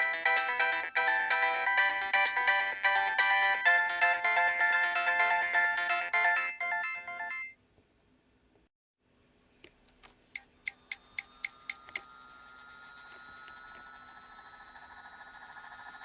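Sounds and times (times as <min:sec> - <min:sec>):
phone ringtone melody: 0:00.0 - 0:07.6, 0:10.4 - 0:12.2
faint clicks: 0:09.6 - 0:12.1
quick beeps: 0:10.4 - 0:12.2
faint steady tone: 0:10.4 - 0:16.0.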